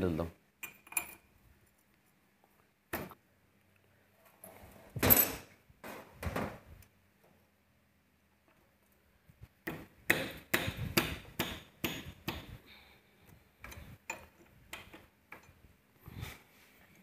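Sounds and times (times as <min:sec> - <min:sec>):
hammer strikes on metal: 0:09.6 - 0:12.6.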